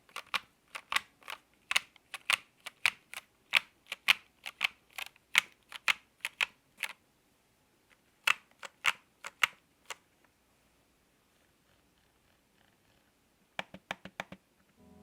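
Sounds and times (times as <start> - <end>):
mechanical keyboard typing: 0.1 - 7.0, 8.3 - 10.0.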